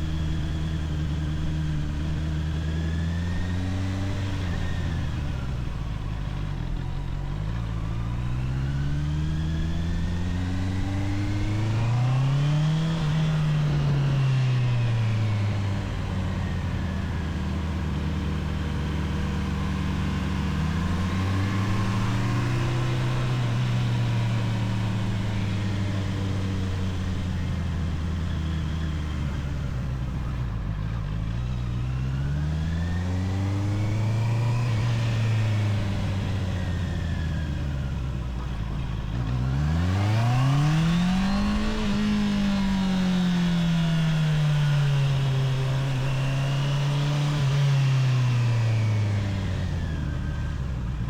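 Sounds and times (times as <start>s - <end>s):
motorcycle engine revving: 0.0s - 51.0s.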